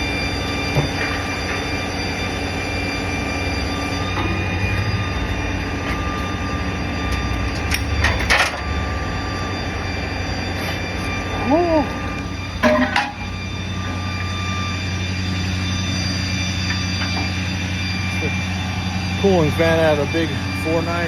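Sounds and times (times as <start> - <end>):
heavy machinery drone with whine: 0.0 - 21.0
metallic scraping and screeching: 12.6 - 13.4.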